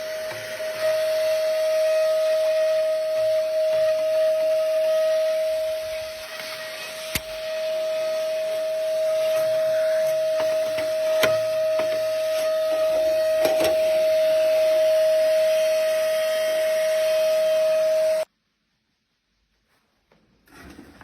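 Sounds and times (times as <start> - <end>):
vacuum motor hum and hiss: 0.0 - 18.3
nozzle clicks and knocks: 10.3 - 12.2.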